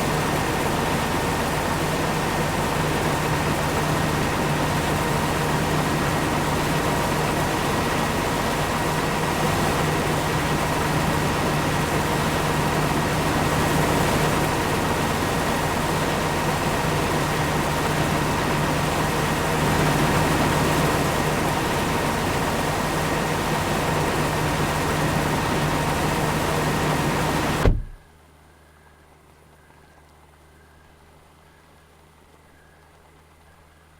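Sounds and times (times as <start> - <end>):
machinery engine drone: 0.0 - 31.0
short knock: 27.6 - 28.0.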